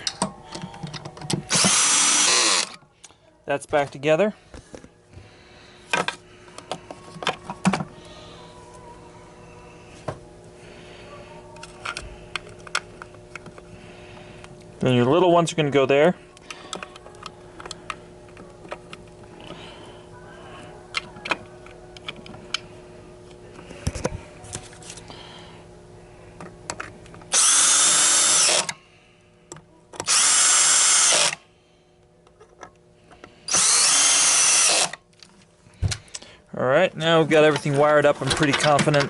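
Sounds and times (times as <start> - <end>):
cordless drill whining: 1.5 - 2.8, 27.3 - 28.8, 30.0 - 31.4, 33.5 - 35.0.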